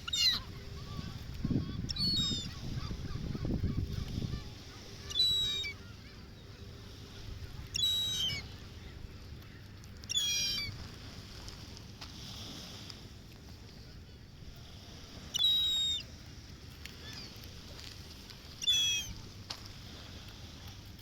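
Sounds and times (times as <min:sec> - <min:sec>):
gulls squawking: 0:00.0 - 0:11.0, 0:15.2 - 0:16.2, 0:16.9 - 0:19.4.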